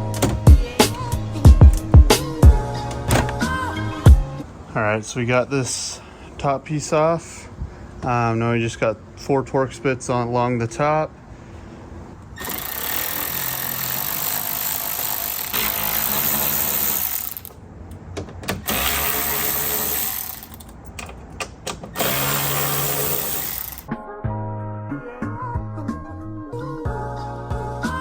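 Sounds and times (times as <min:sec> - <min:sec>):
cordless power driver running: 0:12.4 - 0:17.6, 0:18.6 - 0:20.7, 0:22.0 - 0:23.9.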